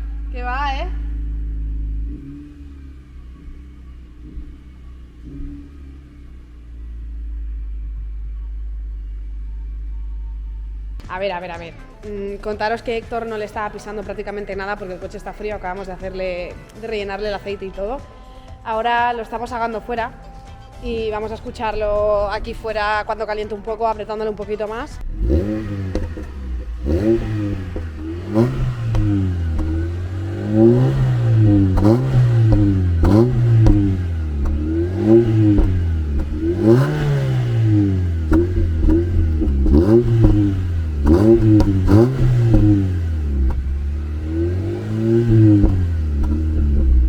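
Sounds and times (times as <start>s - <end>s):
car engine revving: 0.0s - 11.2s, 21.2s - 47.0s
exhaust pops: 21.6s - 47.0s.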